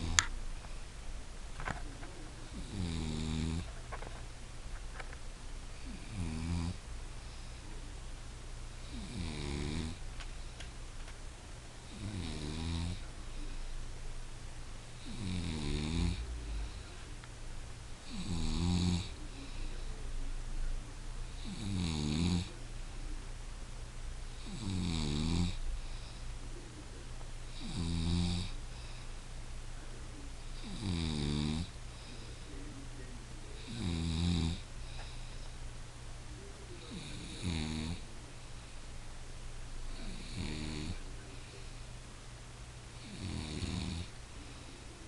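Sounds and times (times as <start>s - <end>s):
woman snoring: 2.6s - 3.7s, 5.8s - 6.8s, 8.9s - 10.0s, 11.9s - 13.0s, 15.0s - 16.7s, 18.1s - 19.1s, 21.4s - 22.5s, 24.4s - 25.6s, 27.6s - 28.5s, 30.6s - 31.7s, 33.7s - 34.6s, 36.9s - 38.0s, 39.9s - 41.0s, 43.0s - 44.1s.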